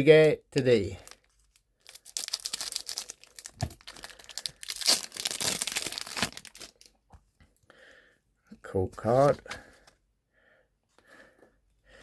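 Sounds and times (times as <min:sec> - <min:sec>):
foil wrapper crinkling and tearing: 0:00.6 - 0:06.9.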